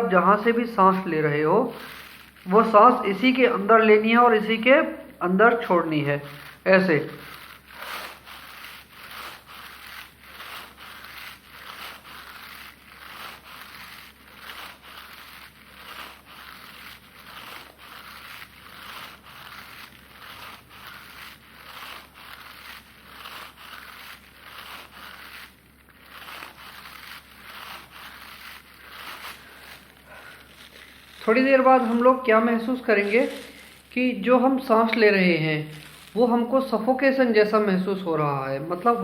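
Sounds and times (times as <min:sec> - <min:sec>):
plastic bag rustling: 0:00.0 - 0:39.0
breathing into plastic bag: 0:01.7 - 0:02.5, 0:06.3 - 0:32.0, 0:33.0 - 0:34.0.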